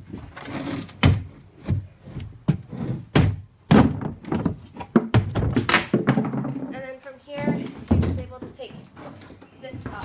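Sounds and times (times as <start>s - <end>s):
plastic scraping: 0.1s - 3.1s
plastic knocks and thunks: 1.0s - 6.7s, 7.4s - 8.6s.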